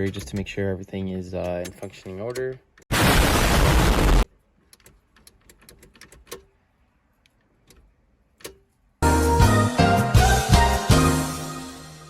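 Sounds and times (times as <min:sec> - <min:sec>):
key clicking in ignition lock: 0:04.6 - 0:06.6
background music: 0:09.0 - 0:12.0.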